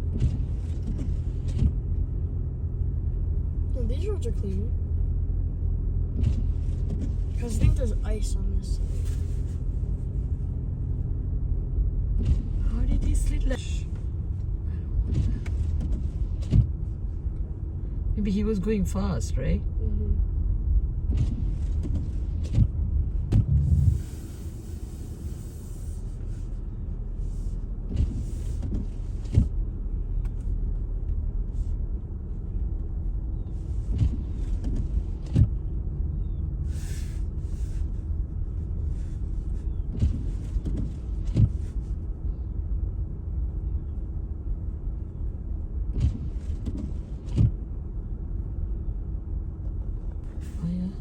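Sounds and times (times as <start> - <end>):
car road noise rumble: 0.0 - 51.0
faint hum: 22.9 - 27.9.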